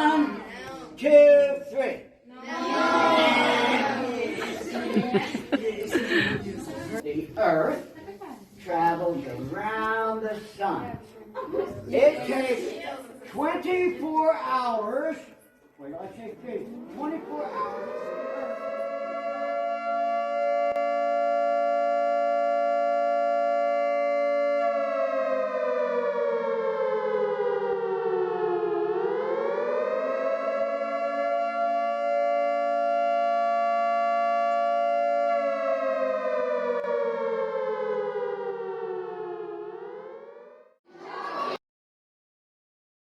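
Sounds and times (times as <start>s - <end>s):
air-raid siren wailing: 2.6s - 5.1s, 16.7s - 40.8s.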